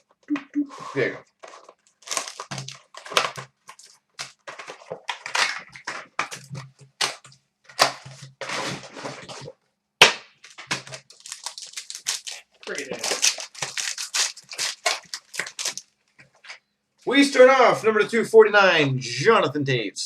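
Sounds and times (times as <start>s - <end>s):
plastic shrink wrap crinkling and tearing: 1.4s - 9.5s, 10.4s - 16.6s.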